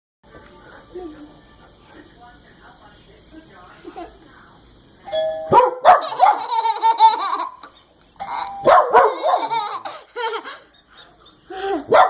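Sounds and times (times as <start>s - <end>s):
doorbell: 5.1s - 5.6s, 8.2s - 8.9s
dogs barking and yelping: 5.5s - 12.0s.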